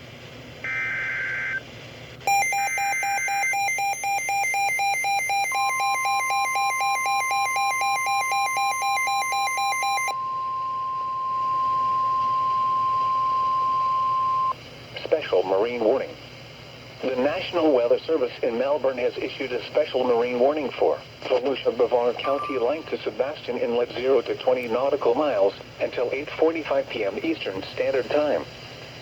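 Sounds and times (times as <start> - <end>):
rapid alarm beeps: 2.3 - 14.5, 22.2 - 23.0
steady warning tone: 2.3 - 14.6, 22.2 - 23.3.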